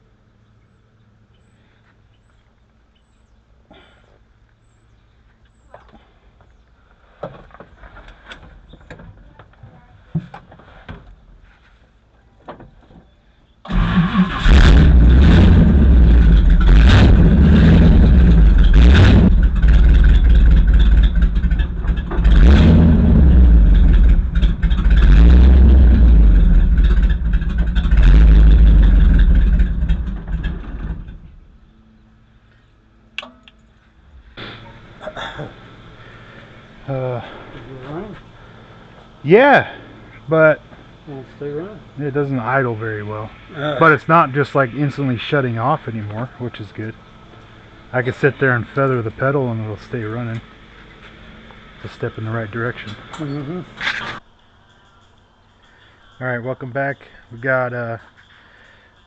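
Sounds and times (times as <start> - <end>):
car engine revving: 13.7 - 31.4.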